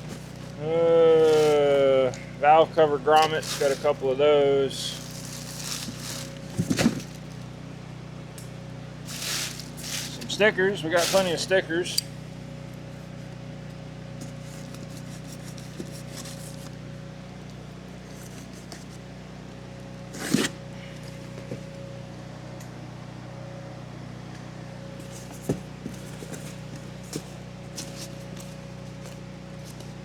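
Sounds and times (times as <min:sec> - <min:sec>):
packaging rustling: 0:00.0 - 0:02.1, 0:03.0 - 0:04.1, 0:04.7 - 0:07.4, 0:09.0 - 0:11.5
steady background hum: 0:00.0 - 0:30.0.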